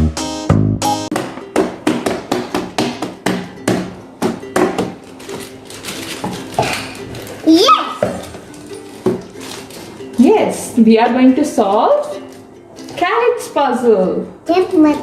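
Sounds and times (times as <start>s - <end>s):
sharp hammer-like knocks: 1.1s - 5.0s.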